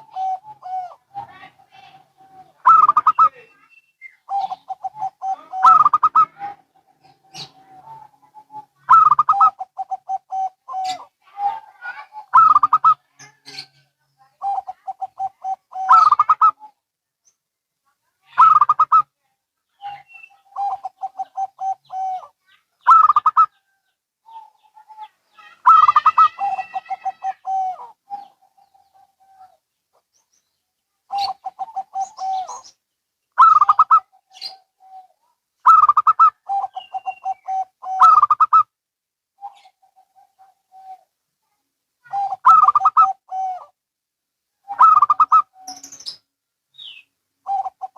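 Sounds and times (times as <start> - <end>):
doves cooing: 0.0 - 3.5, 4.3 - 11.1, 12.0 - 13.8, 14.4 - 16.8, 19.8 - 23.6, 24.3 - 30.0, 31.1 - 32.8, 33.4 - 38.7, 39.4 - 41.1, 42.0 - 43.8, 44.6 - 45.8, 47.4 - 47.9.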